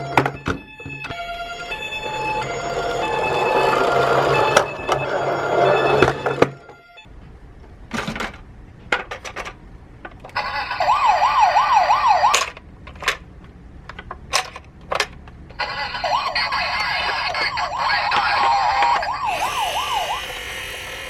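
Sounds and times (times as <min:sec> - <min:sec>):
toy siren electronic wail: 0:00.0 - 0:07.1, 0:10.4 - 0:12.5, 0:15.6 - 0:21.0.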